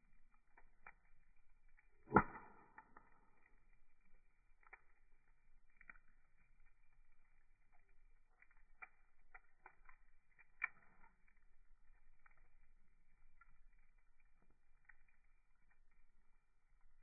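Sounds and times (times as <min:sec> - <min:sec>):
wood fire crackling: 0:00.0 - 0:17.0
loud sharp pop: 0:02.1 - 0:02.8.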